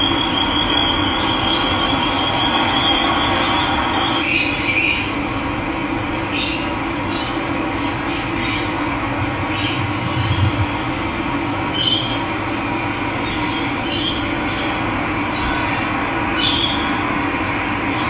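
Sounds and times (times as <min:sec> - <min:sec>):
running water rushing: 0:11.6 - 0:13.8
bird calling: 0:11.6 - 0:14.1.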